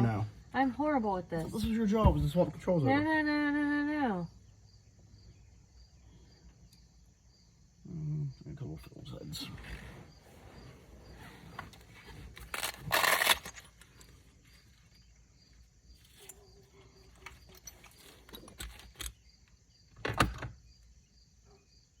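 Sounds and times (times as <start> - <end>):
small tools clicking and rattling: 12.3 - 15.0, 16.0 - 19.3.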